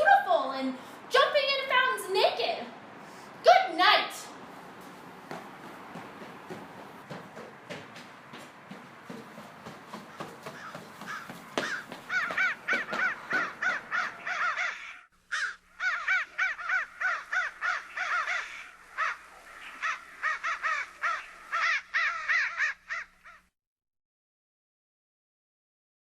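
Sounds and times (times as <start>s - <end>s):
crows cawing: 9.1s - 23.5s.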